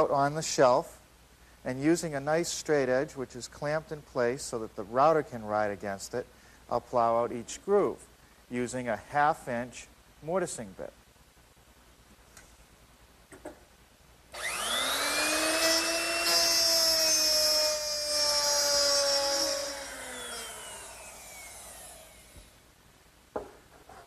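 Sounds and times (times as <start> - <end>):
electric router whining: 14.4 - 22.6.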